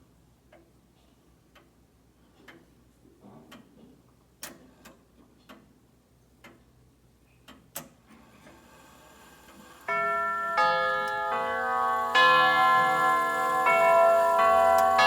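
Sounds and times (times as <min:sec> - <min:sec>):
sharp clock click: 0:12.8 - 0:15.0.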